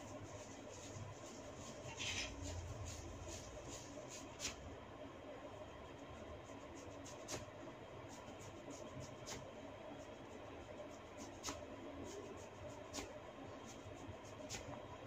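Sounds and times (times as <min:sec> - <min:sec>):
fingers rustling in hair: 0:00.0 - 0:04.7.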